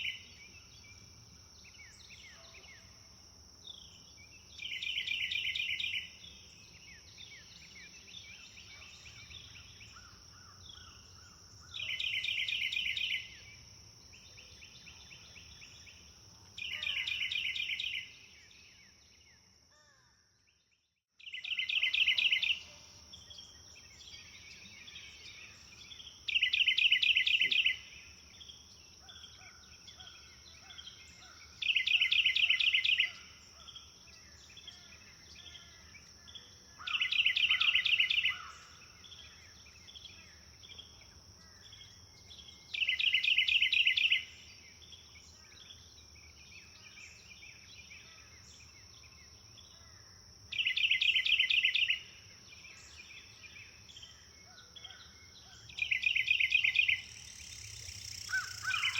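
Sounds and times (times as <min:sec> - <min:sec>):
other birds calling softly: 0:03.6 - 0:20.1, 0:21.2 - 0:58.9
songbird trilling: 0:11.6 - 0:13.3, 0:16.6 - 0:18.1, 0:21.2 - 0:22.7, 0:26.3 - 0:27.9, 0:31.6 - 0:33.7, 0:36.8 - 0:38.7, 0:42.6 - 0:44.3, 0:50.5 - 0:52.0, 0:54.8 - 0:58.9
high insect drone: 0:56.0 - 0:58.9.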